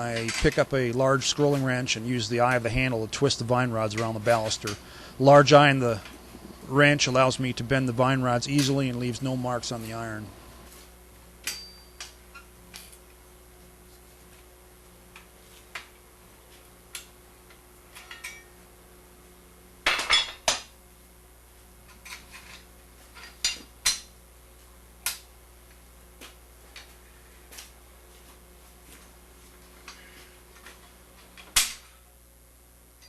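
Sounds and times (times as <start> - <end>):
steel clinking on steel: 11.4 - 12.1.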